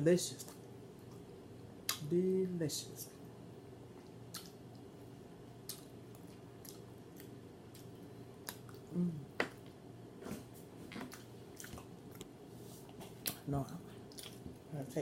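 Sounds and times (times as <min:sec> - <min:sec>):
person chewing with mouth smacking: 0:03.9 - 0:04.9, 0:05.6 - 0:09.8, 0:10.8 - 0:14.7
sharp mouth clicks: 0:04.3 - 0:04.6.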